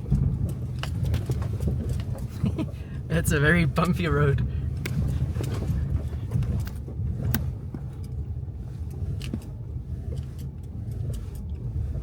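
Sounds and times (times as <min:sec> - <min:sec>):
car rumbling on dirt road: 0:00.0 - 0:12.0
knocks and rattles over bumps: 0:00.0 - 0:12.0.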